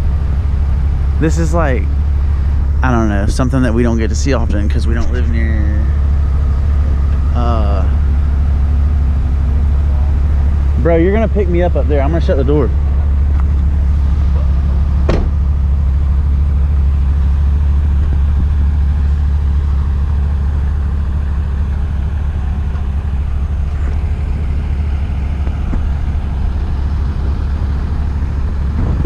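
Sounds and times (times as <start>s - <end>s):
vehicle engine idling: 0.0s - 29.0s
sharp knock: 15.0s - 15.4s.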